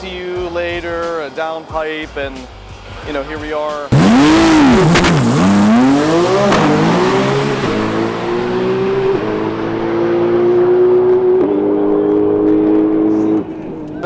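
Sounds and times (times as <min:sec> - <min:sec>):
car engine revving hard: 0:03.9 - 0:13.6.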